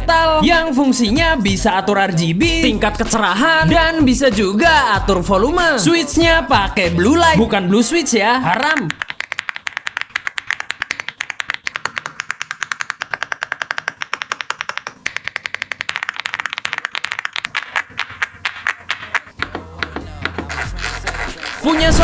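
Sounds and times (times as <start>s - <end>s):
mechanical keyboard typing: 8.5s - 22.0s.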